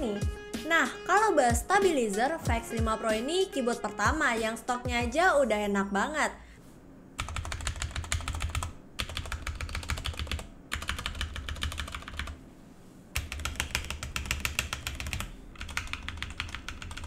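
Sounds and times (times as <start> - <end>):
mechanical keyboard typing: 7.2 - 12.4, 13.2 - 17.0.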